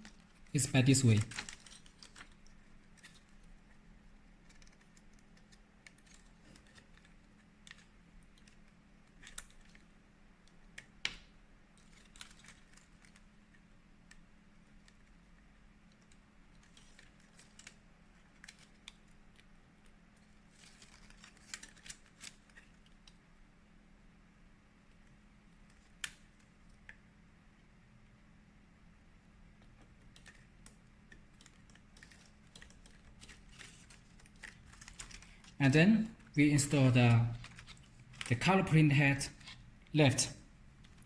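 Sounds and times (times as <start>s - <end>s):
faint steady hum: 0.0s - 41.0s
ribbon cables clicking into connectors: 1.1s - 13.3s, 15.9s - 23.2s, 29.6s - 36.4s, 37.2s - 38.6s.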